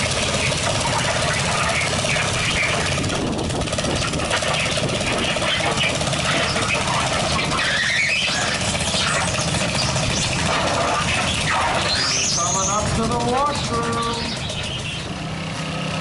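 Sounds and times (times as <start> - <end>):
lawn tractor engine running hard: 0.0 - 16.0
high squeal: 4.4 - 15.2.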